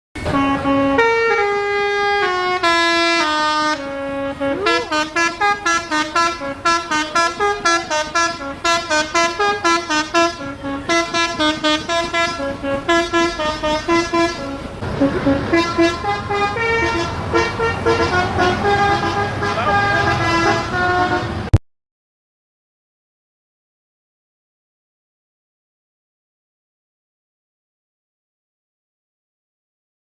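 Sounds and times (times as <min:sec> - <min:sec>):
multi-tone air horn tune: 0:00.2 - 0:21.6.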